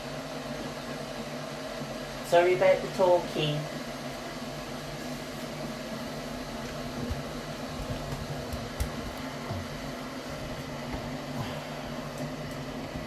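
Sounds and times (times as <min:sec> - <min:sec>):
washing machine hum: 0:00.0 - 0:13.0
soft knocks of turning drum: 0:06.7 - 0:11.2.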